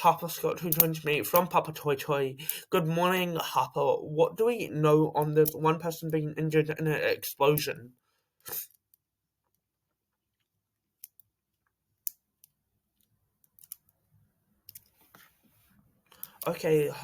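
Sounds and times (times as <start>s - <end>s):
faint clicks and handling noises: 8.7s - 14.0s, 14.6s - 16.6s.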